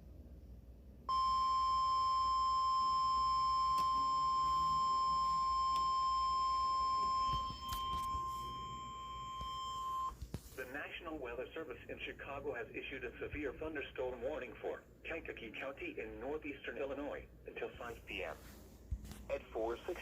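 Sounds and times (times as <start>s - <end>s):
steady alarm beep: 1.1s - 10.1s.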